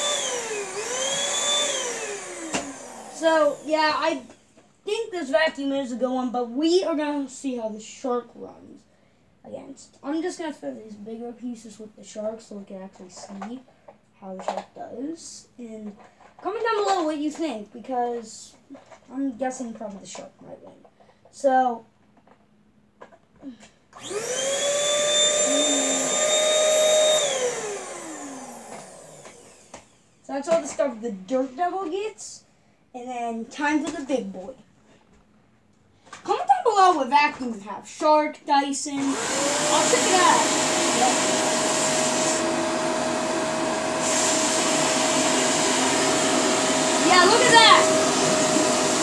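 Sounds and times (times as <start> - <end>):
vacuum cleaner motor whining: 0.0 - 4.0, 24.0 - 30.0, 39.0 - 49.0.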